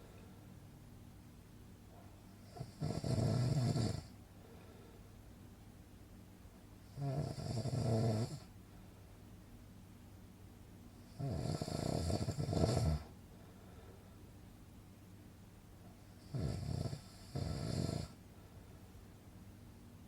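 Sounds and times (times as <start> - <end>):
faint steady hum: 0.0 - 20.0
person snoring: 2.5 - 4.1, 6.9 - 8.5, 11.1 - 13.1, 16.2 - 18.2.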